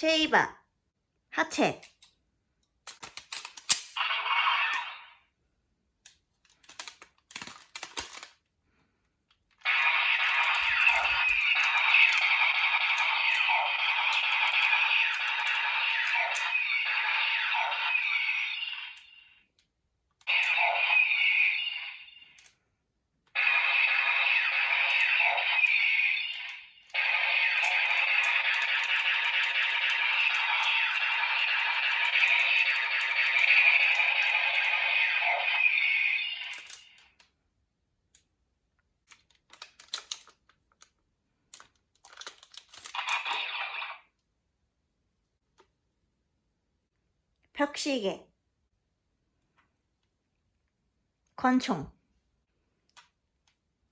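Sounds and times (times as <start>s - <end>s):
electronic toy sound effect: 4.0s - 5.2s, 9.7s - 19.3s, 20.3s - 22.4s, 23.4s - 36.9s
clicks and taps of paper pieces: 39.0s - 43.0s.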